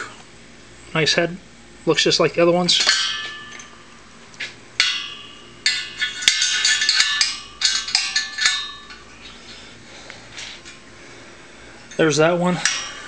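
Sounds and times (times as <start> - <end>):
wire spokes clinking and ringing: 2.6 - 4.1, 4.8 - 9.7, 11.8 - 13.0.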